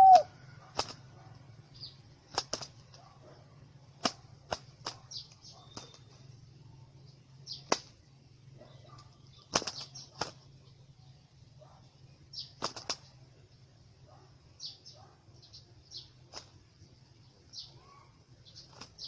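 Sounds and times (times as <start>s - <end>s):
bird wings flapping: 0.6s - 1.3s, 2.2s - 3.2s, 3.9s - 6.3s, 7.6s - 8.0s, 9.0s - 10.5s, 12.5s - 13.2s, 16.2s - 16.7s, 18.6s - 19.0s.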